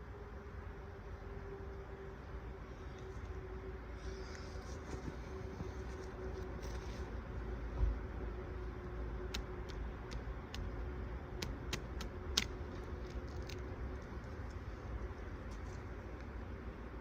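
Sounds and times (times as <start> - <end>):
faint steady hum: 0.0 - 17.0
wood and bark snapping: 9.3 - 10.8, 11.4 - 16.3.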